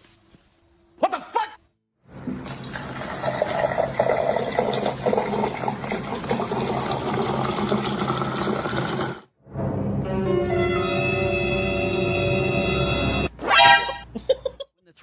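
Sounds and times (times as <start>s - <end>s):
running water: 2.3s - 9.3s.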